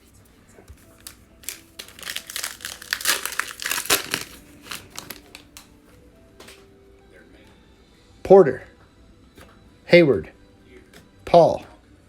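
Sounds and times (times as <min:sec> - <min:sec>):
plastic wrapper tearing and crinkling: 0:00.9 - 0:05.7.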